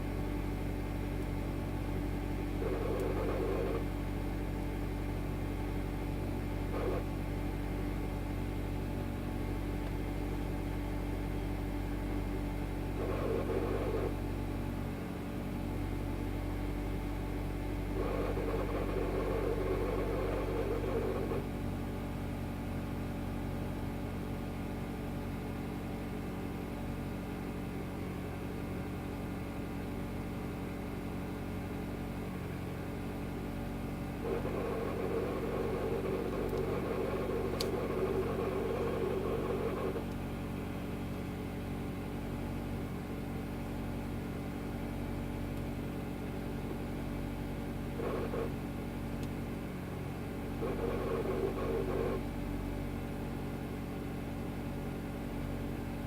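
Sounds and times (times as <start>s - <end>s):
harsh engine noise: 0.0s - 10.2s, 10.9s - 15.6s, 16.9s - 21.8s, 32.9s - 42.7s, 45.0s - 53.1s
car engine idling: 0.0s - 16.1s, 32.2s - 53.4s.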